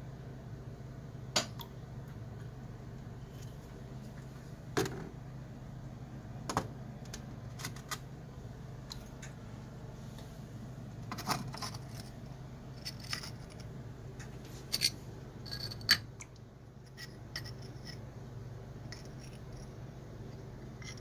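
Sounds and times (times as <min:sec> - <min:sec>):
steady low hum: 0:00.0 - 0:21.0
sharpening stones clicking and knocking: 0:16.9 - 0:18.0.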